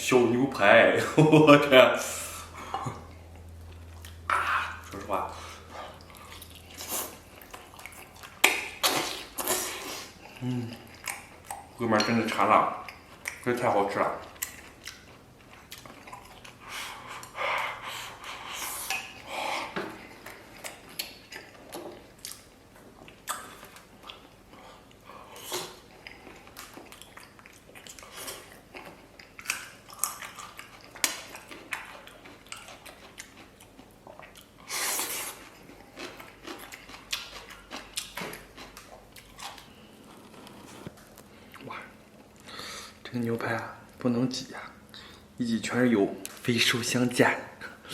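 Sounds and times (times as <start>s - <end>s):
close-miked chewing: 2.6s - 43.0s
rustling: 39.9s - 41.3s.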